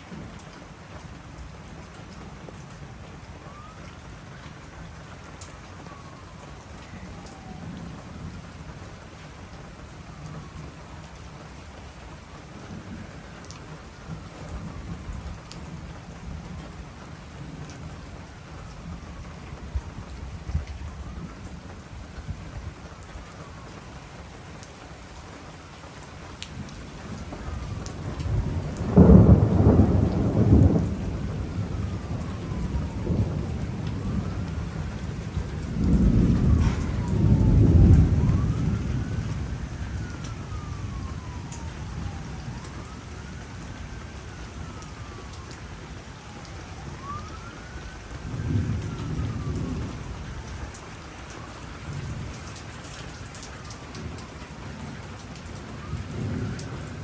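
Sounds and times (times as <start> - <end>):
faint wailing siren: 0.0 - 57.0
steady rain falling: 0.0 - 57.0
thunder rolling: 5.9 - 8.7, 26.5 - 45.6, 46.2 - 52.5.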